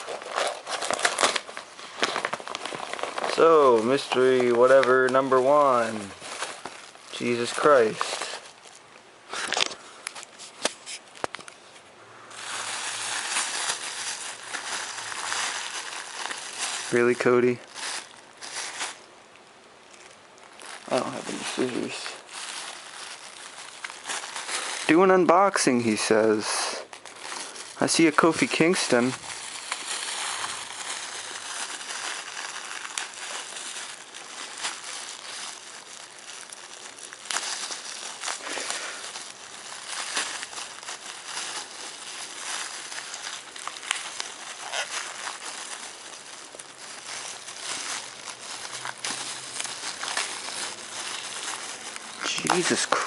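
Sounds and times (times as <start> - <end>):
packaging crackling and clicking: 0.0 - 8.8, 26.9 - 53.0
wrapping crinkling and rustling: 0.0 - 53.0.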